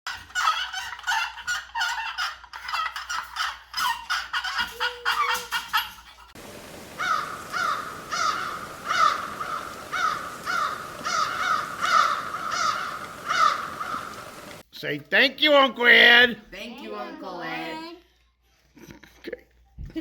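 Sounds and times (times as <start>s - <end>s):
turkey yelps: 0.3s - 14.6s.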